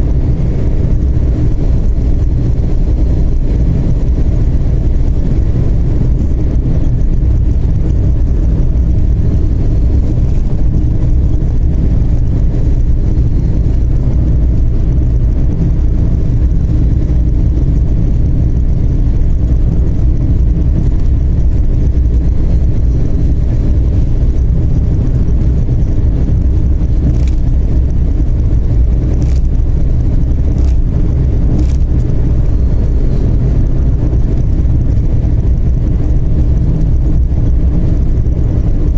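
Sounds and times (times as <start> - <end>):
car engine and road drone: 0.0 - 38.9
sharp clicks: 27.0 - 27.6, 29.2 - 29.6, 30.5 - 30.9, 31.5 - 32.0.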